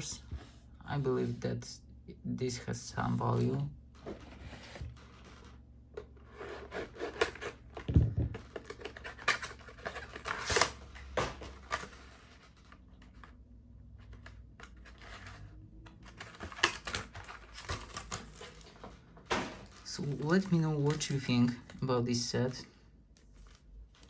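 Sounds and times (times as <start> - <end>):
cards and wrappers rustling: 6.2 - 24.0.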